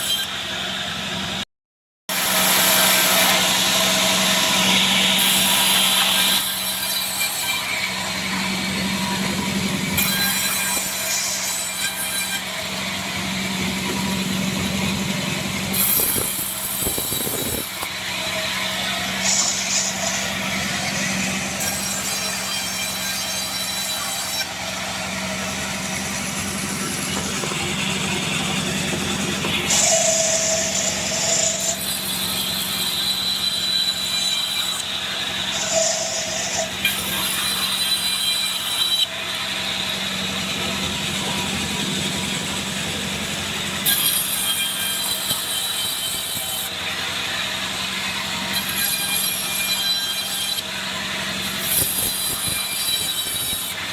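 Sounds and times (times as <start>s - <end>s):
band saw cutting log: 0.0s - 1.4s, 2.1s - 53.9s
motor hum: 24.7s - 31.3s.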